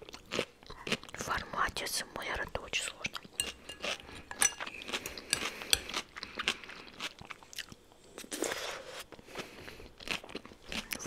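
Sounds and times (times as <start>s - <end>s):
chewing crunchy food: 0.0s - 1.8s, 2.7s - 11.0s.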